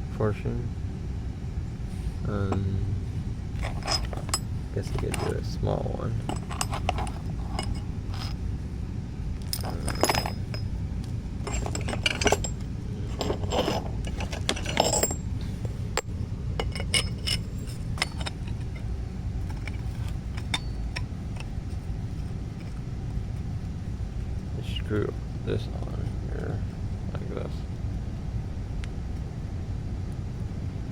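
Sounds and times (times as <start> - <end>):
steady low rumble: 0.0 - 30.9
metal tool parts clinking: 3.6 - 5.6, 6.2 - 8.4, 9.4 - 10.8, 11.4 - 21.6.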